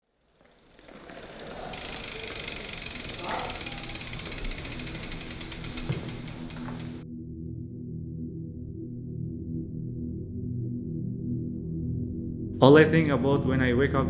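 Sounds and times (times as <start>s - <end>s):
bicycle freewheel hub ticking: 0.1s - 7.0s.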